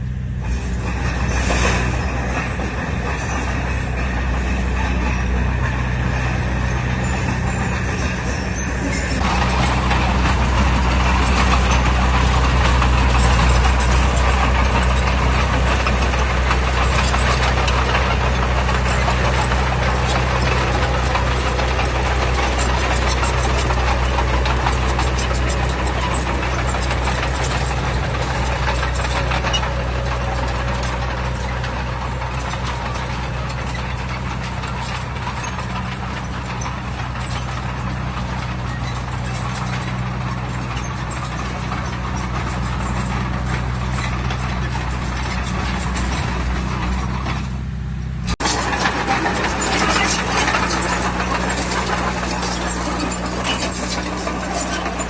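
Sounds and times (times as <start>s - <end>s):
heavy diesel machinery running: 0.0s - 55.0s
mechanical clatter: 0.4s - 47.6s, 48.2s - 55.0s.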